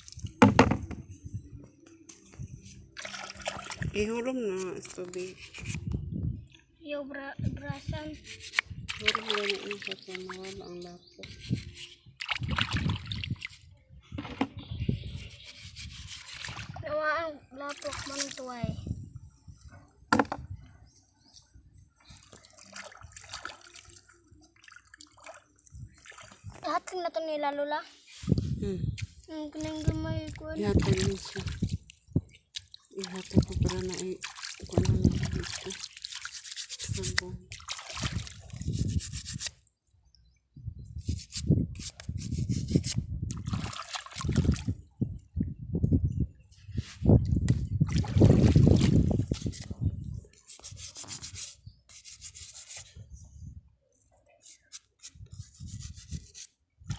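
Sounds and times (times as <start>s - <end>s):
water trickling and splashing: 0.0s - 1.1s, 2.1s - 14.4s, 15.1s - 27.4s, 28.1s - 40.0s, 41.0s - 45.3s, 46.7s - 53.0s, 54.4s - 56.9s
brush scrubbing shells: 4.6s - 5.8s, 8.0s - 12.4s, 15.2s - 16.6s, 33.0s - 39.5s, 41.1s - 43.0s, 48.4s - 49.7s, 50.3s - 52.8s, 54.5s - 56.5s.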